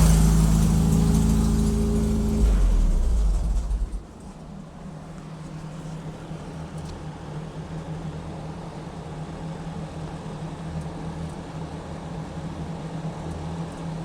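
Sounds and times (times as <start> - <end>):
car engine idling: 0.0 - 7.0.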